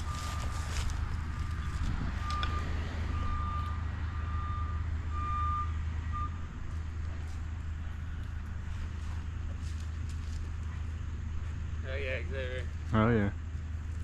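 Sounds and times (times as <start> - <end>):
backup alarm beeping: 0.0 - 0.7, 1.4 - 6.6
heavy machine engine running: 0.0 - 14.0.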